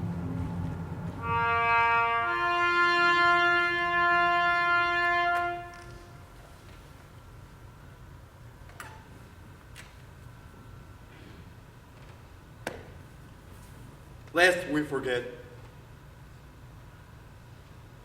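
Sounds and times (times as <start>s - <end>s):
brass long held notes: 0.0s - 6.4s.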